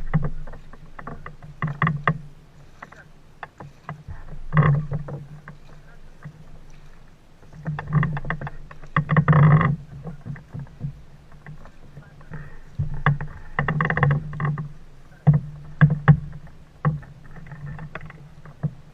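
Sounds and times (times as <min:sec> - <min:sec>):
boat engine droning: 0:00.0 - 0:18.9
sharp knocks: 0:07.6 - 0:18.8.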